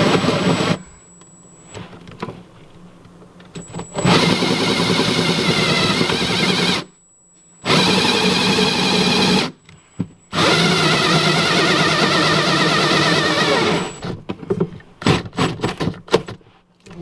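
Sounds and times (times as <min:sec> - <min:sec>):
power drill cutting plastic: 0:00.0 - 0:00.8, 0:03.6 - 0:06.9, 0:07.6 - 0:09.6, 0:10.3 - 0:14.2.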